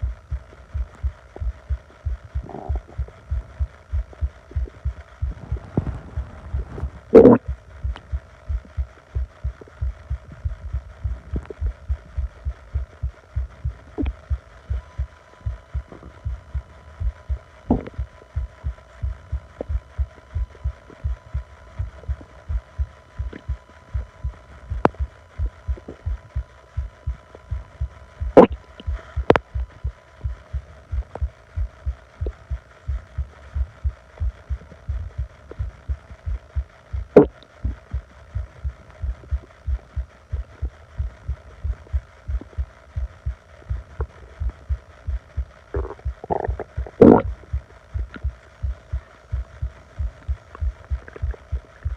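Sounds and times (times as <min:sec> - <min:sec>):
stomach low thumps: 0:00.0 - 0:51.9
short sharp stomach sounds: 0:02.3 - 0:08.6, 0:17.7 - 0:18.1, 0:45.7 - 0:48.8.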